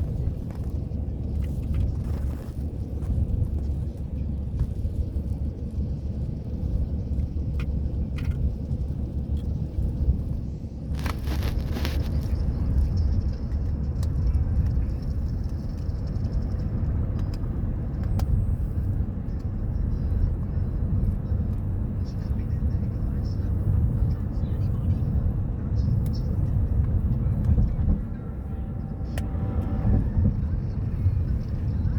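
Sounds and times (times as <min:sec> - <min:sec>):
road rumble inside car: 0:00.0 - 0:31.9.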